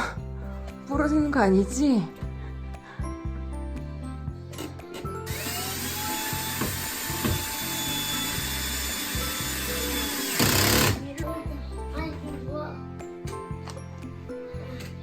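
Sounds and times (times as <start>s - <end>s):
background music: 0.0s - 15.0s
electric drill whining: 5.1s - 11.1s.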